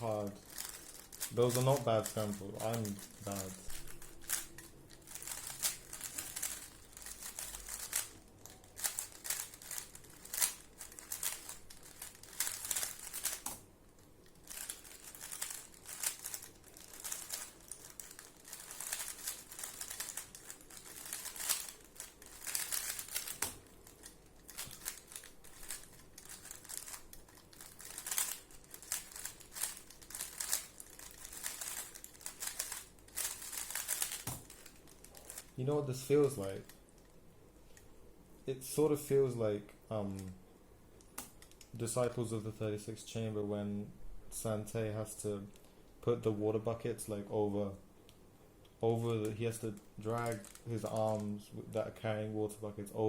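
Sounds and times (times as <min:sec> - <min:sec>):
speed cube clicking and rattling: 0:00.0 - 0:13.6, 0:14.2 - 0:35.6, 0:49.7 - 0:51.2.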